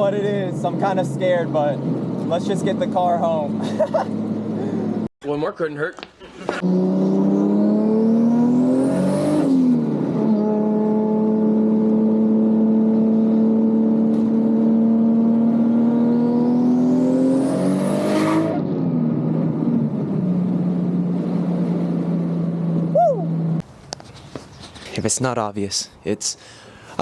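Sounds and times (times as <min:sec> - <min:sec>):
car engine revving under full throttle: 0:00.1 - 0:05.1, 0:06.6 - 0:23.6.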